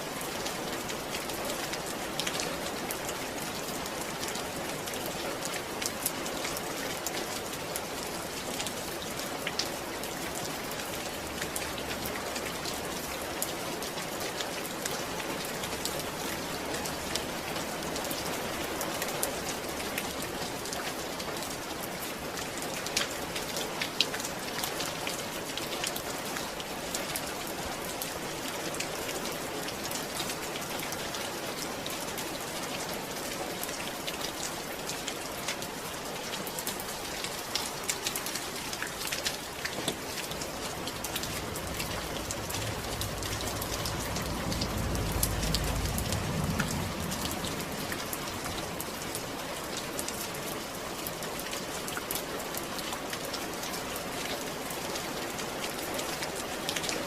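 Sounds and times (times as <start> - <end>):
steady rain falling: 0.0 - 57.0
low rumble: 40.3 - 49.0.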